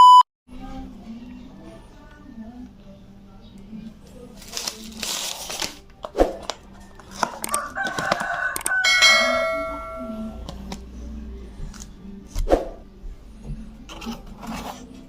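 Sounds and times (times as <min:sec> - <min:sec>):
rooster crowing: 0:06.8 - 0:10.4.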